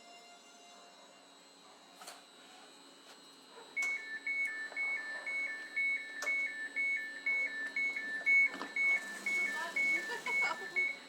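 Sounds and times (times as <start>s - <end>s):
two-tone railway warning beeper: 3.8s - 11.0s.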